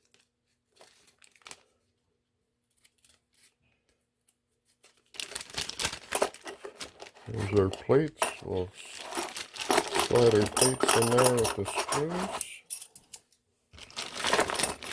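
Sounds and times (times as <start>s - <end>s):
packaging rustling and clicking: 0.0s - 1.7s, 4.8s - 12.6s, 13.8s - 14.9s
metal plates clinking together: 9.6s - 13.0s.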